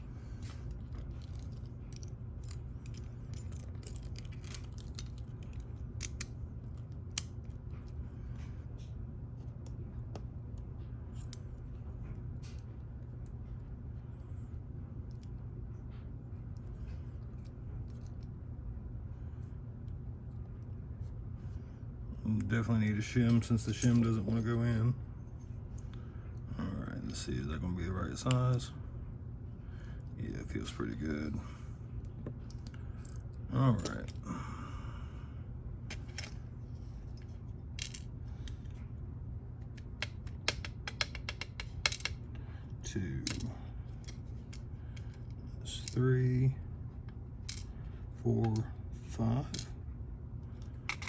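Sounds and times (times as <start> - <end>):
steady low hum: 0.0 - 51.0
metal lock parts clicking: 0.4 - 7.6, 39.7 - 42.2.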